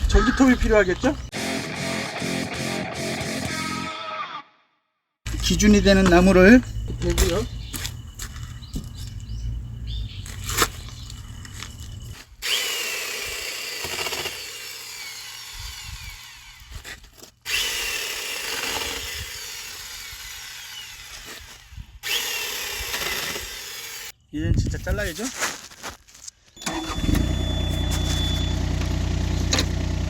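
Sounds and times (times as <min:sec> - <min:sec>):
electric chainsaw cutting log: 0:01.3 - 0:03.7, 0:12.4 - 0:24.2, 0:26.6 - 0:30.0.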